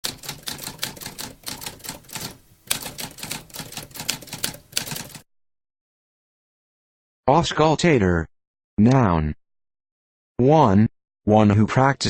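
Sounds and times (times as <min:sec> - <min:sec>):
typewriter keys clacking: 0:00.0 - 0:05.2.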